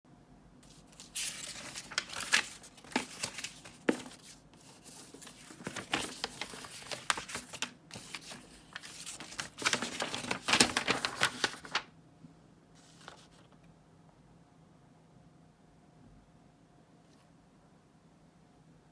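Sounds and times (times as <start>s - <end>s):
packaging crinkling and tearing: 0.6s - 11.8s.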